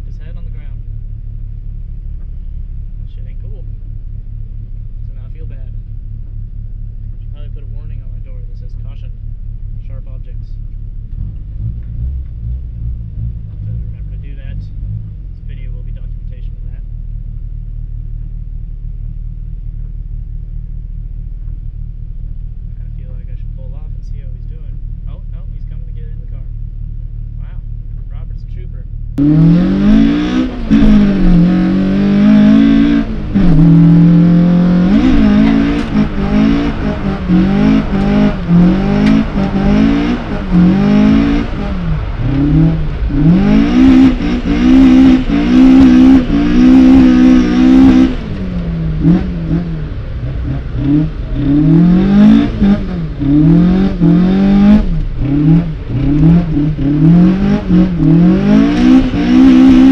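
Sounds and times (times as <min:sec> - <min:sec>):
car engine revving hard: 0:29.2 - 0:59.9.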